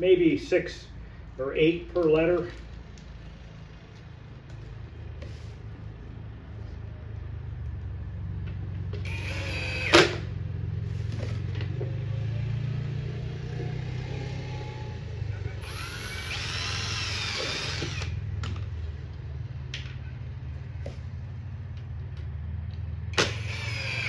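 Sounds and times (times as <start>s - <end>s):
power drill whining: 9.0s - 10.3s, 15.4s - 18.2s, 23.2s - 24.0s.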